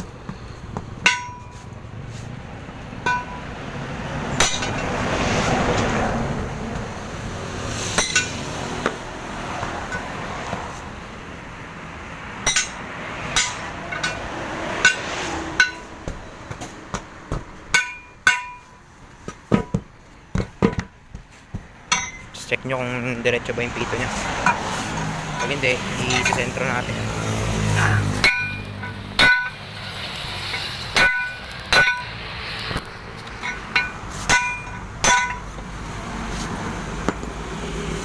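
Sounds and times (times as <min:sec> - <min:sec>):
hammer striking steel wheel rim: 0:00.3 - 0:01.7, 0:03.0 - 0:03.5, 0:04.4 - 0:04.9, 0:07.9 - 0:09.0, 0:12.4 - 0:22.4, 0:28.2 - 0:29.7, 0:30.4 - 0:32.2, 0:33.4 - 0:35.6.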